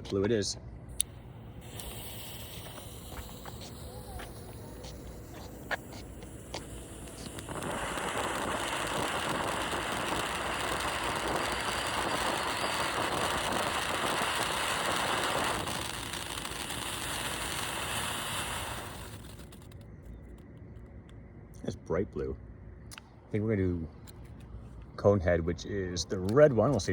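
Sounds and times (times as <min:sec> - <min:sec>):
ground fountain firework hissing: 0:00.9 - 0:20.0.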